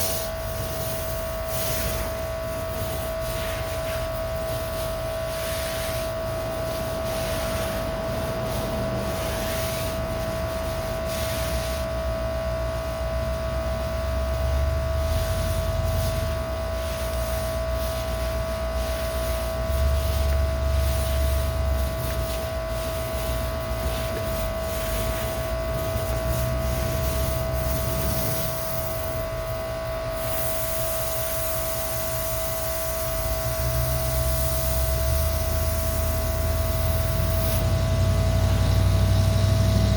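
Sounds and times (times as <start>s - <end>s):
water spray hiss: 0.0s - 12.1s, 14.5s - 39.9s
pressure washer whine: 0.0s - 39.9s
surface cleaner rumble: 0.0s - 39.9s.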